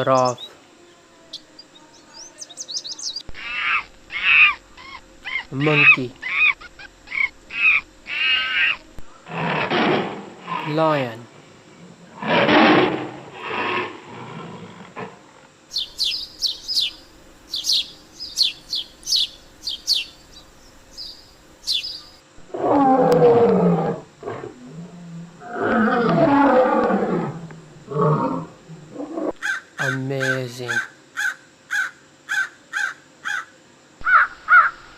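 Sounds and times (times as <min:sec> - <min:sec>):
birds chirping: 0:00.0 - 0:09.2, 0:15.7 - 0:22.2
lion roaring: 0:07.6 - 0:11.0, 0:11.7 - 0:15.5, 0:22.4 - 0:29.4.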